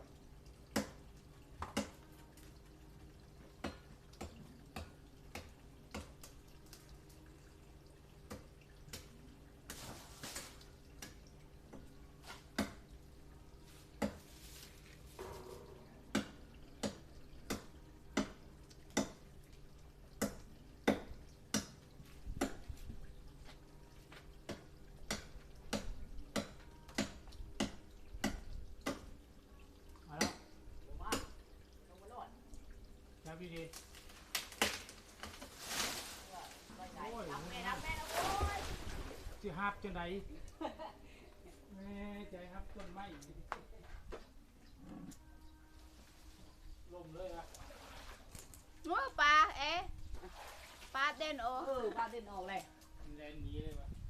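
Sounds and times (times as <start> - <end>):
leaves rustling: 9.7 - 10.8, 13.6 - 15.6, 33.4 - 39.7
machete chopping branch: 33.7 - 36.4.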